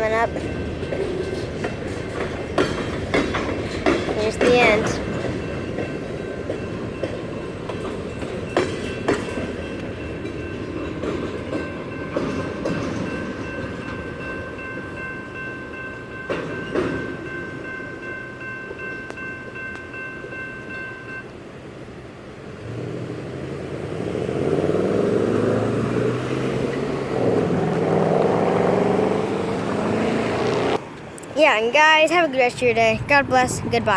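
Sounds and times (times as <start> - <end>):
train wheels clacking over rail joints: 0.0 - 14.3, 16.2 - 17.4
high ringing tones: 11.6 - 21.3
road vehicle engine revving: 22.6 - 30.8.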